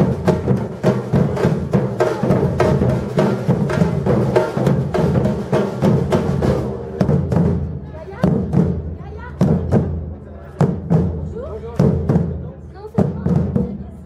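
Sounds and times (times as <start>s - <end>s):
sharp high drum strokes: 0.0s - 10.0s
bass drums: 0.0s - 14.0s.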